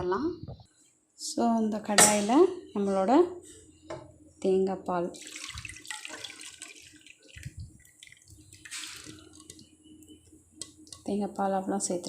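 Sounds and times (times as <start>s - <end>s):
liquid pouring into a pan: 5.2s - 9.6s.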